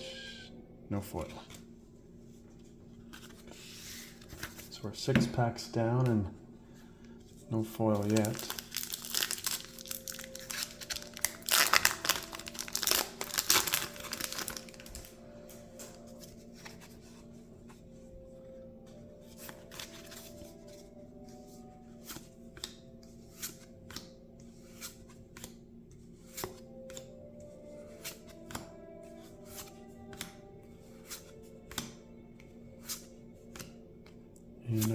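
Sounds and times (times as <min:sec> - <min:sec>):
faint background music: 0:00.0 - 0:34.9
wrapper tearing and crinkling: 0:08.0 - 0:15.2
cards clicking as flipped: 0:22.0 - 0:25.6, 0:26.2 - 0:27.2, 0:27.9 - 0:28.7, 0:29.5 - 0:30.4, 0:31.0 - 0:32.0, 0:32.8 - 0:34.2.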